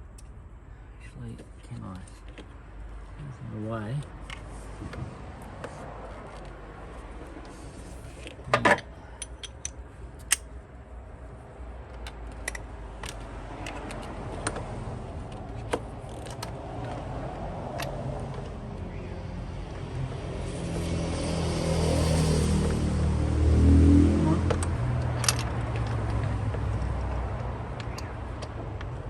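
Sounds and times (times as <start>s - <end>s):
low vehicle engine sound: 0.0s - 29.0s.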